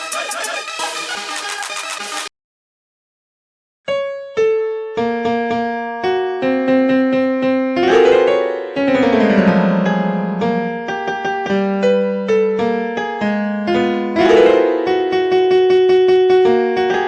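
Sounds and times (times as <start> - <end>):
piano ringtone melody: 3.9 - 17.0.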